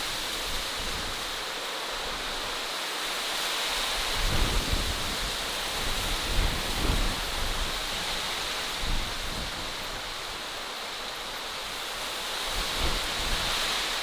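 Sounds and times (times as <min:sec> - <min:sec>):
steady rushing hiss: 0:00.0 - 0:14.0
wind buffeting microphone: 0:04.0 - 0:10.4.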